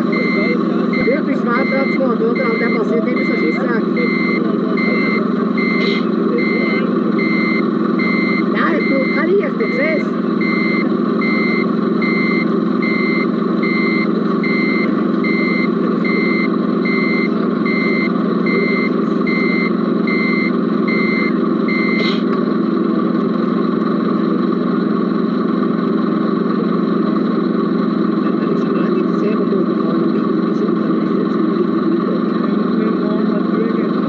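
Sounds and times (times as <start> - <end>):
reversing beeper beeping: 0.0 - 22.1
steady engine hum: 0.0 - 34.0.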